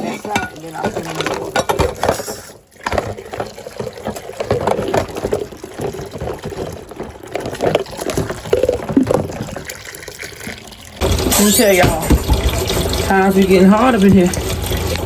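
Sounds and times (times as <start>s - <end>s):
dishes clinking: 0.0s - 5.4s, 11.0s - 15.0s
kitchen faucet running: 0.0s - 15.0s
water splashing: 0.0s - 15.0s.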